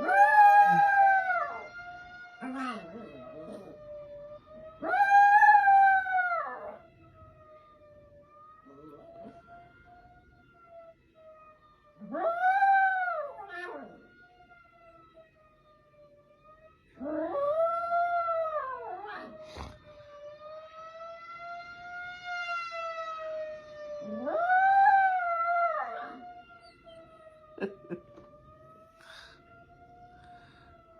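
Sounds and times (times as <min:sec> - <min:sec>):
dog howling: 0:00.0 - 0:01.7, 0:02.4 - 0:03.9, 0:04.8 - 0:06.8, 0:12.0 - 0:14.0, 0:24.0 - 0:27.0
tornado warning siren wailing: 0:00.0 - 0:30.9.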